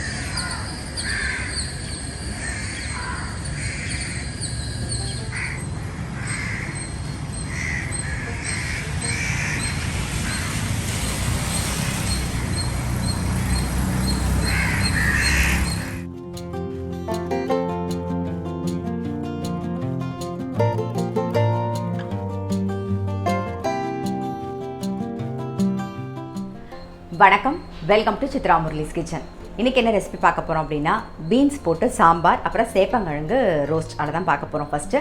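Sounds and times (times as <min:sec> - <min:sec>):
harsh bird call: 0:00.0 - 0:16.1.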